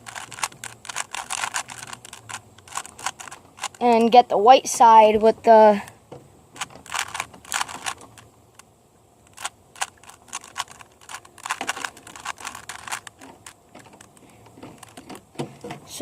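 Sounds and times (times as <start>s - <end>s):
plastic puzzle cube clicking: 0.0s - 4.0s, 6.6s - 8.3s, 9.3s - 15.3s.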